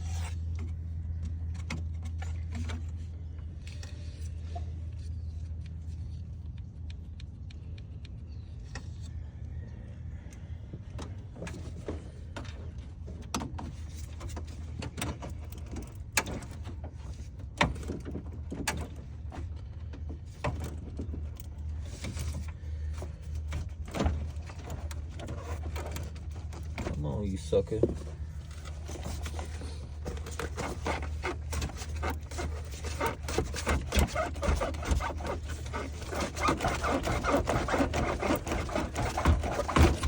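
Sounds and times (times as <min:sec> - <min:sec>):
steady low hum: 0:00.0 - 0:40.0
hand tools clicking and knocking: 0:27.8 - 0:40.0.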